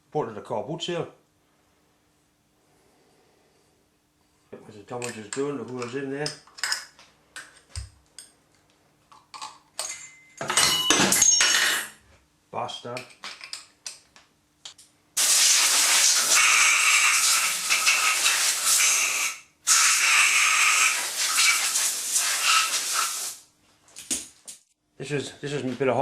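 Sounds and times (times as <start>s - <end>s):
pressurised jet hissing: 15.2s - 23.4s.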